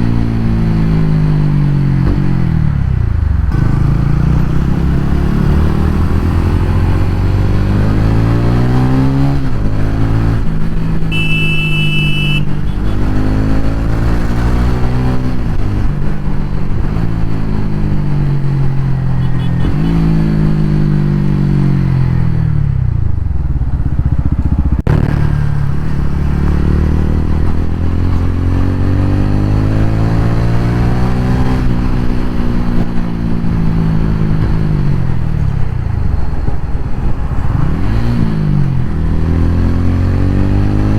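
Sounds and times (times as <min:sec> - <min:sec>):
motorcycle engine revving: 0:00.0 - 0:40.9
horn beeping: 0:11.1 - 0:13.2.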